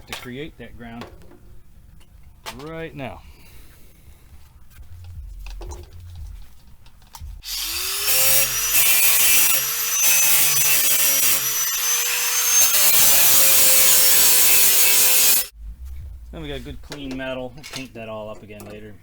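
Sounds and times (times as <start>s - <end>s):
angle grinder grinding steel: 7.4s - 15.5s.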